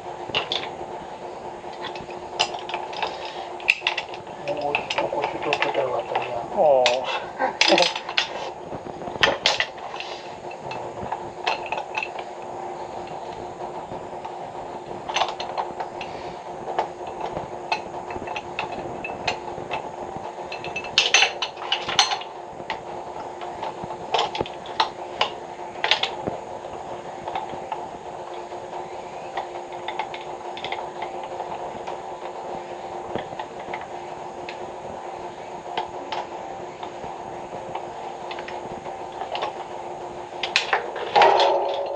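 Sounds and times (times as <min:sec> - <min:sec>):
steady hum: 0:00.0 - 0:41.9.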